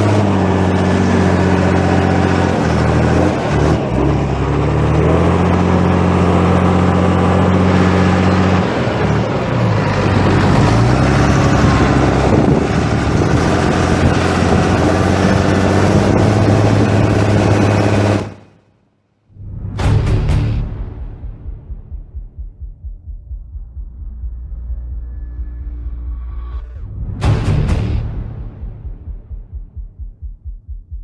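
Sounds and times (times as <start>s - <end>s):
tractor diesel engine under load: 0.0s - 18.6s.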